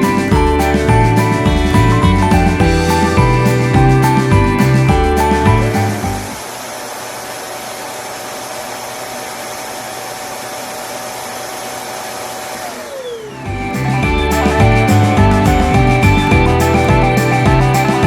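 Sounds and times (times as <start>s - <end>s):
vacuum cleaner motor whine: 6.0s - 18.0s.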